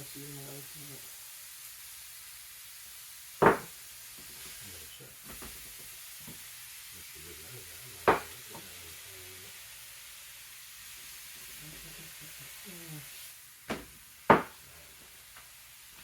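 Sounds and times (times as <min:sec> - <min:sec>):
steaks sizzling in a frying pan: 0:00.0 - 0:16.0
sharp knocks: 0:03.4 - 0:03.7, 0:08.1 - 0:08.3, 0:13.7 - 0:14.6.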